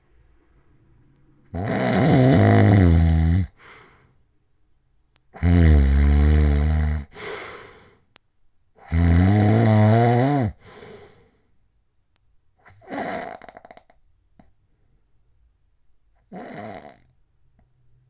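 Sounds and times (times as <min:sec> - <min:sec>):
man snoring loudly: 0:01.5 - 0:03.6, 0:05.4 - 0:07.3, 0:08.9 - 0:10.6
soft breath: 0:03.5 - 0:04.2, 0:07.1 - 0:08.1, 0:10.6 - 0:11.5.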